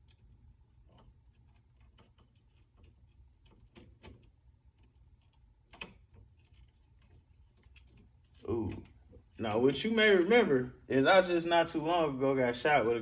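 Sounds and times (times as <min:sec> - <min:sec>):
faint small clicks and taps: 0:00.0 - 0:09.6.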